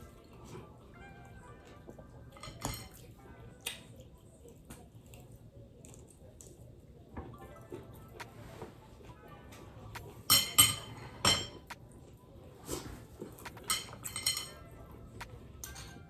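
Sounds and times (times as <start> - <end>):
utensil clinking against a dish: 2.4 - 3.0, 10.0 - 11.8, 12.7 - 14.7, 15.6 - 16.0.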